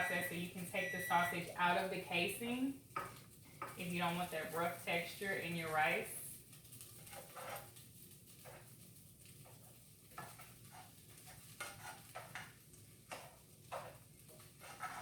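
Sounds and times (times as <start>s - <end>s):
food sizzling: 0.0s - 15.0s
utensil scraping a pan: 6.6s - 15.0s.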